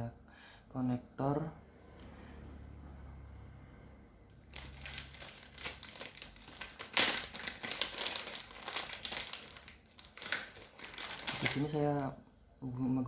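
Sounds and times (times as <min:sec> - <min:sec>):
plastic crinkling and clicking: 0:04.4 - 0:11.8.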